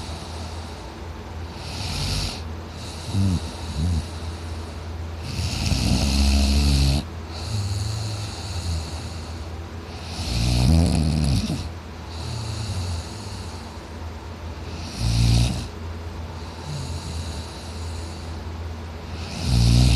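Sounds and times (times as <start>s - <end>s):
man snoring loudly: 1.5s - 4.6s, 5.2s - 13.6s, 14.7s - 15.7s, 16.4s - 18.3s, 19.0s - 19.9s.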